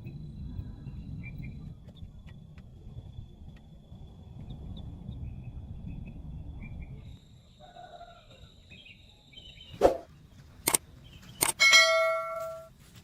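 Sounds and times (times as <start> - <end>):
metal object clanging: 11.6 - 12.7.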